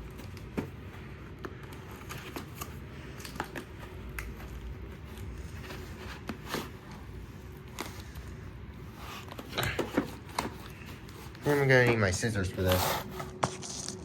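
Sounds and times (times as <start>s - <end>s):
low steady hum: 0.0s - 14.0s
packaging clicks and rustles: 0.0s - 14.0s.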